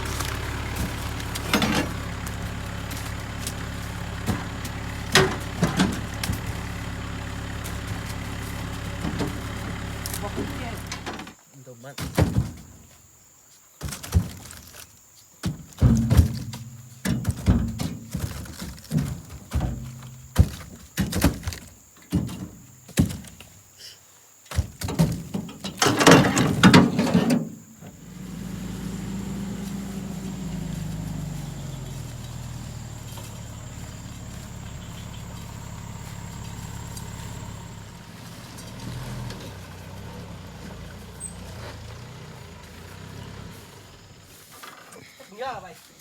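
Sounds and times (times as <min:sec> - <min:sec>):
loud knocks and thuds: 0:00.0 - 0:06.8, 0:12.0 - 0:12.9, 0:15.4 - 0:23.4, 0:24.5 - 0:27.6
truck engine running: 0:00.0 - 0:11.4, 0:25.9 - 0:44.6.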